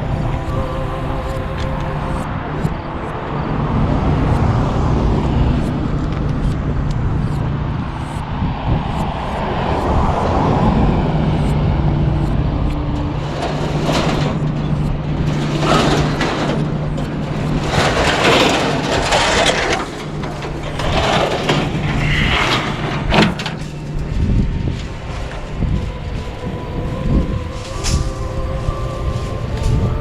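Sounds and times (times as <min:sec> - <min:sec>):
truck engine idling: 0:10.7 - 0:30.0
scrap scraping and clattering: 0:13.0 - 0:30.0.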